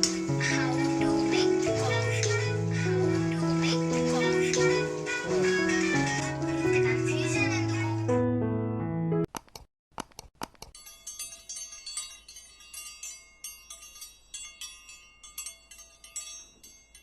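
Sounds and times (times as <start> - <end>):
wind chimes tinkling: 0.0 - 7.0, 10.8 - 17.0
sharp clicks: 9.3 - 10.8.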